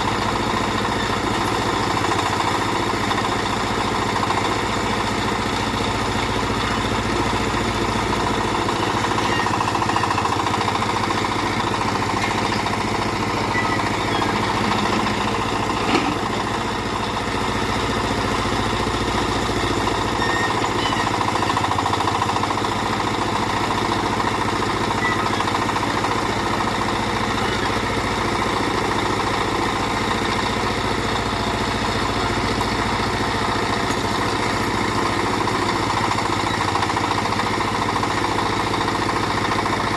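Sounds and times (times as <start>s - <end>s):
backhoe engine running: 0.0s - 39.9s.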